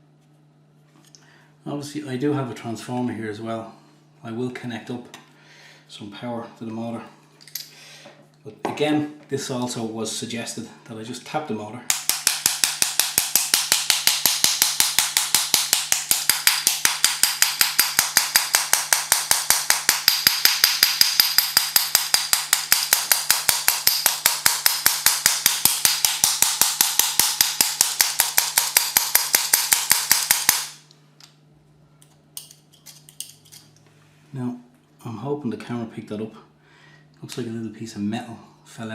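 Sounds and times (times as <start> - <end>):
sharp metallic tapping on motor: 11.9 - 30.8.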